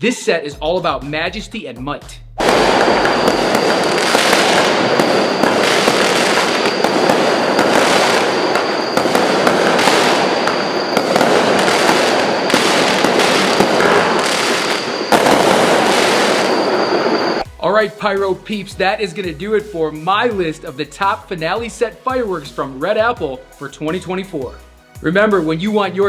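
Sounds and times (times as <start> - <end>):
fireworks barrage: 2.4 - 17.4.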